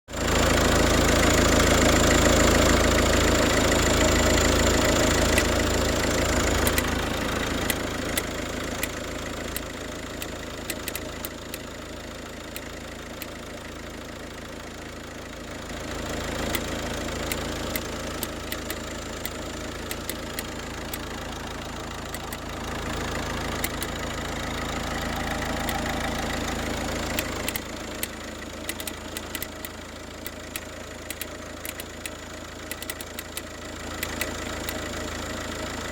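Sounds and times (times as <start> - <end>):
diesel engine idling: 0.1 - 35.9
irregular ticking: 6.6 - 11.7, 16.5 - 21.3, 22.0 - 22.6, 23.6 - 24.2, 25.2 - 34.8.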